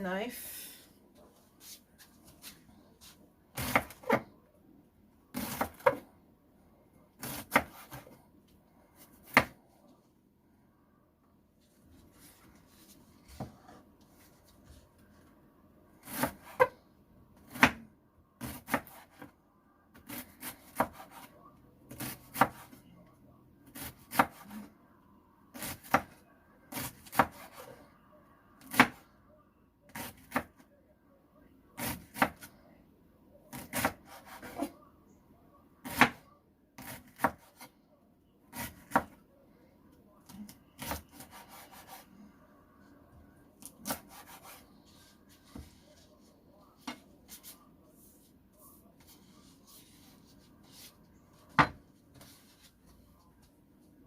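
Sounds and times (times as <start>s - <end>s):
knife chopping on cutting board: 3.6s - 4.2s, 5.3s - 6.0s, 7.2s - 8.1s, 9.2s - 9.6s, 35.8s - 36.2s, 38.5s - 39.2s, 51.5s - 52.4s.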